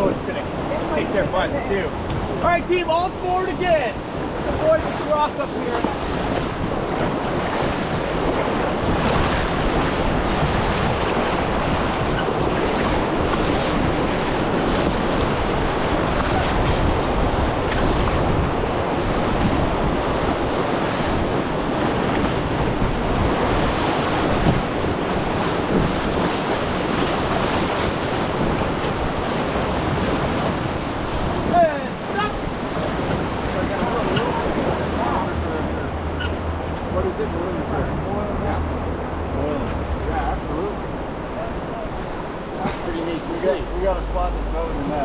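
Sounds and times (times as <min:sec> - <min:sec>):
whitewater rushing: 0:00.0 - 0:45.0
wind buffeting microphone: 0:00.0 - 0:45.0.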